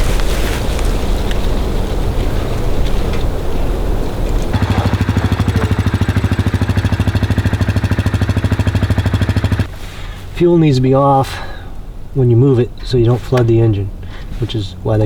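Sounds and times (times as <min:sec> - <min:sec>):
small gasoline engine putter: 0:04.5 - 0:09.8.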